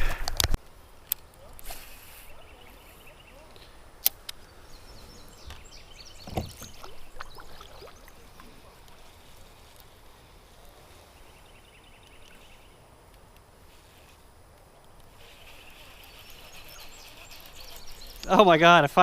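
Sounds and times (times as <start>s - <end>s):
faint chirping: 0.8s - 12.9s, 13.6s - 18.8s
thump against kayak hull: 6.2s - 7.0s.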